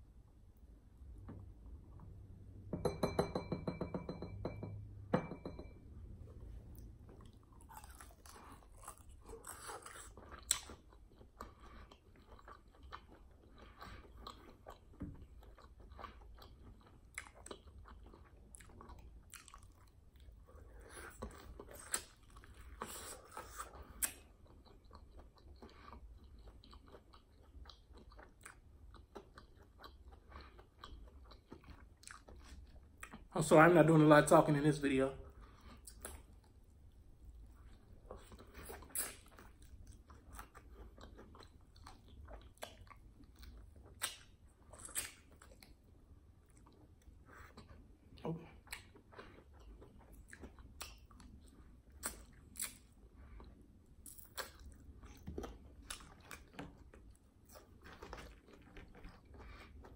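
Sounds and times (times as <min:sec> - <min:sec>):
chewing and crunching: 0:06.6 - 0:33.3, 0:35.3 - 0:59.9.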